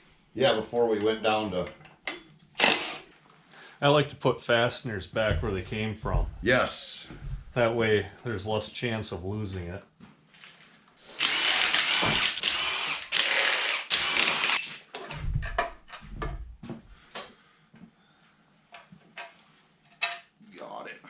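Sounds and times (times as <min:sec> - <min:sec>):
electric drill-driver whine: 0:02.6 - 0:03.1, 0:11.1 - 0:14.8
low thuds: 0:05.1 - 0:07.8, 0:15.1 - 0:17.0.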